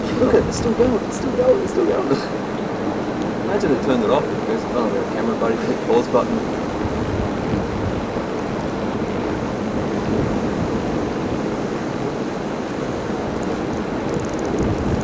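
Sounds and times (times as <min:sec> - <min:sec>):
steady rushing noise: 0:00.0 - 0:15.0
faint high ticks: 0:13.4 - 0:15.0.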